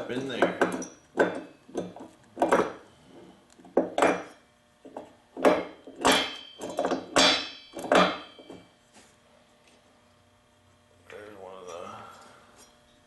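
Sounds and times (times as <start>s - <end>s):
metal knocks and clanks: 0.2s - 2.8s.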